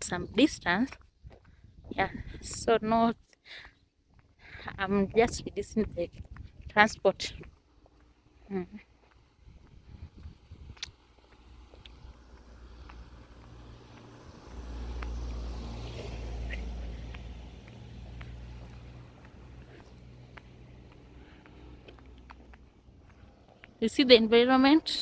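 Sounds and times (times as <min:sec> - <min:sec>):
vehicle engine passing by: 0:09.2 - 0:23.8.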